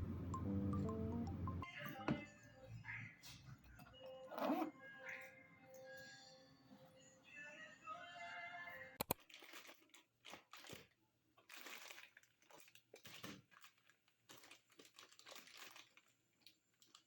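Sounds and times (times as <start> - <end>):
crinkling and rustling: 9.0 - 17.0.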